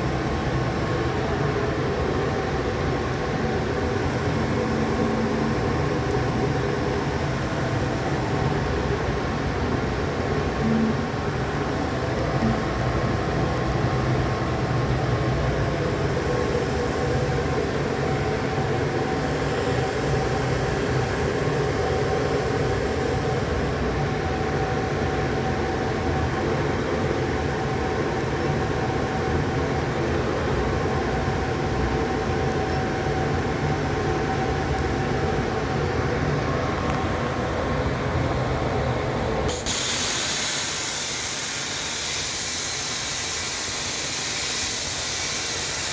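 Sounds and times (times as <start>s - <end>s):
loud hiss: 39.5s - 45.9s.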